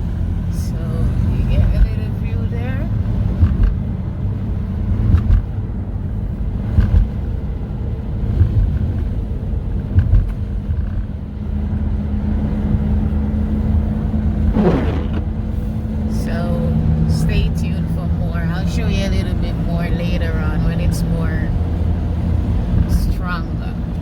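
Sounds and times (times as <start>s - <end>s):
car road and engine rumble: 0.0s - 24.0s
short falling pitch sound: 14.5s - 15.4s.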